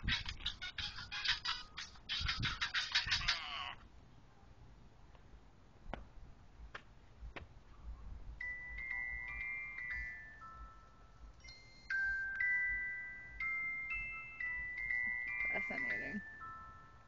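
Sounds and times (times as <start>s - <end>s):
phone ringtone bell-like melody: 8.4s - 17.0s.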